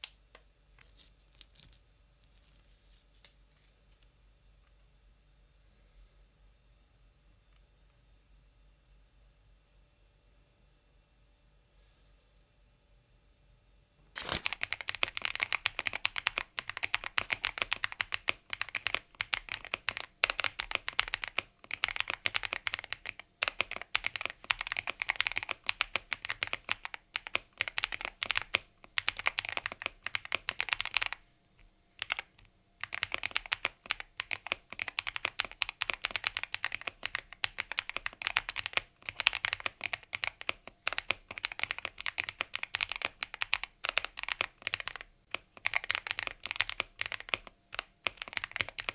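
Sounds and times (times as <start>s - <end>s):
mechanical keyboard typing: 14.2s - 31.2s, 32.0s - 48.9s.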